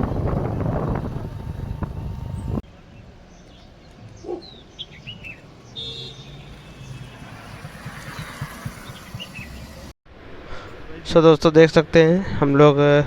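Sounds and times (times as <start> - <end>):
low hum of traffic: 0.0 - 10.3
small birds chirping: 0.4 - 9.9.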